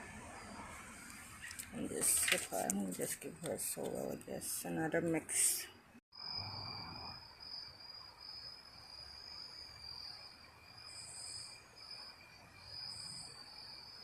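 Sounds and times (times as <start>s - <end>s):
insects trilling: 6.2s - 14.0s.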